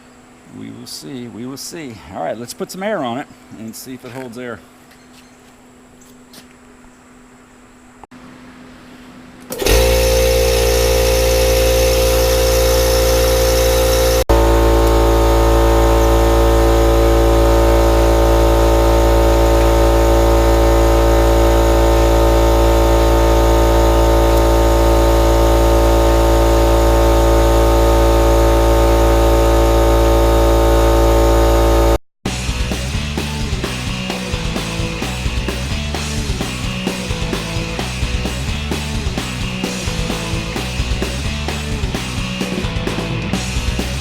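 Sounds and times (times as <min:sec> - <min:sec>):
compressor click: 0:09.4 - 0:20.7, 0:22.8 - 0:25.6
air compressor motor humming: 0:09.5 - 0:44.0.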